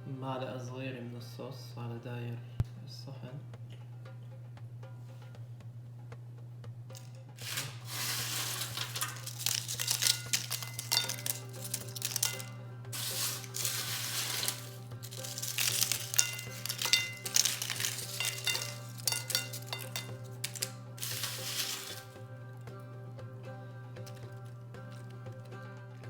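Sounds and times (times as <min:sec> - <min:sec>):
background music: 0:00.0 - 0:26.0
crackling: 0:06.9 - 0:22.2
utensils clinking on a dish: 0:07.0 - 0:22.2.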